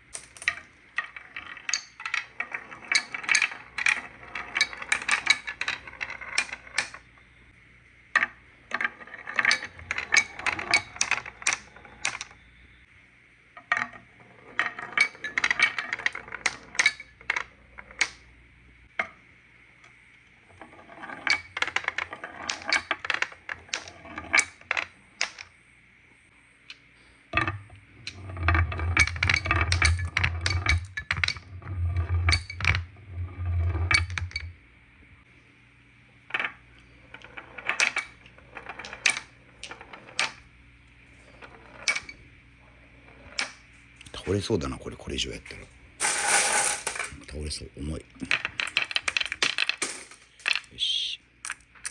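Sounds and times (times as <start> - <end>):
marbles clattering on wooden run: 0.0 - 7.1, 8.1 - 12.4, 13.6 - 18.2, 20.5 - 25.5, 27.4 - 34.6, 36.3 - 40.5, 41.3 - 42.2, 43.1 - 43.6, 46.0 - 47.3, 48.2 - 50.7.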